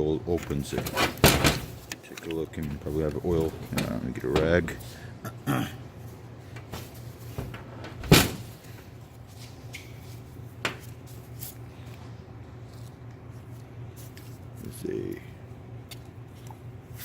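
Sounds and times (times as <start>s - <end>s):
steady low hum: 0.0s - 17.0s
cabinet shutting with knock: 7.4s - 8.5s.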